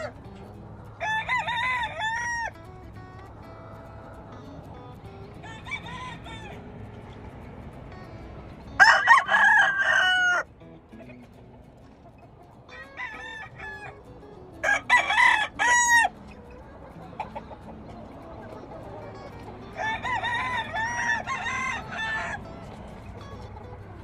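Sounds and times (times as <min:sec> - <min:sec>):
distant roosters crowing: 0:00.0 - 0:10.7, 0:12.0 - 0:24.0
rooster crowing: 0:01.0 - 0:02.5, 0:05.4 - 0:06.7, 0:08.8 - 0:10.5, 0:12.7 - 0:14.0, 0:14.6 - 0:16.2, 0:19.7 - 0:22.6.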